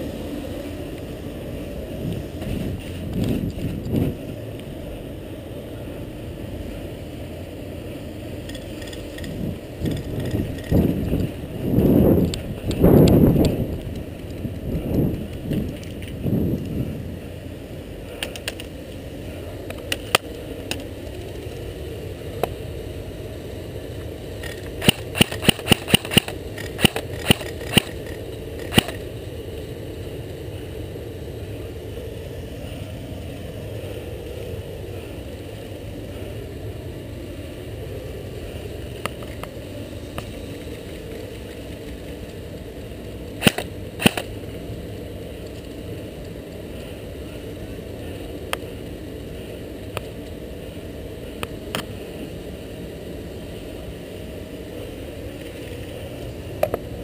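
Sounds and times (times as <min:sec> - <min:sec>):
background rumble: 0:00.0 - 0:57.0
airsoft guns firing: 0:24.8 - 0:28.0, 0:43.4 - 0:44.3.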